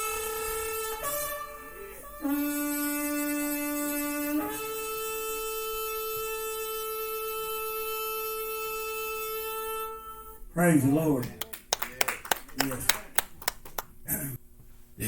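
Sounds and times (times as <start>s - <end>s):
shofar being blown: 0.0s - 10.5s.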